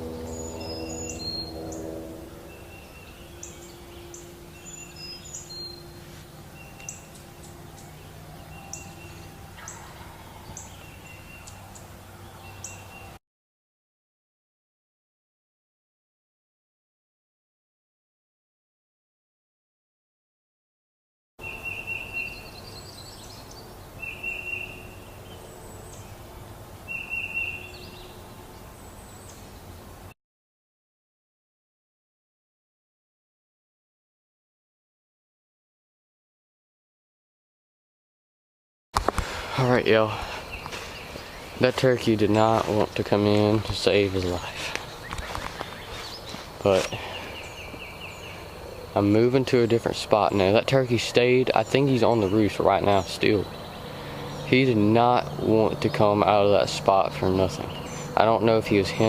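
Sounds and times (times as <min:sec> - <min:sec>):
low background hum: 0:00.0 - 0:13.2
songbirds whistling and chirping: 0:00.0 - 0:13.2, 0:21.4 - 0:29.8, 0:40.0 - 0:50.4, 0:51.1 - 0:59.0
turkey gobbling: 0:09.6 - 0:10.6.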